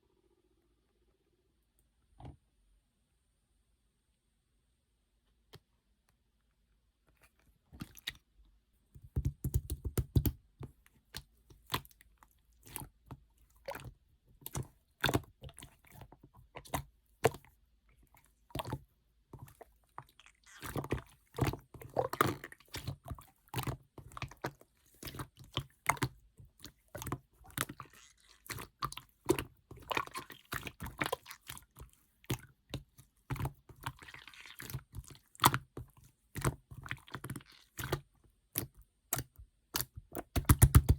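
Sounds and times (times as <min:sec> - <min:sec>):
slime clicking and squishing: 0:09.0 - 0:40.9.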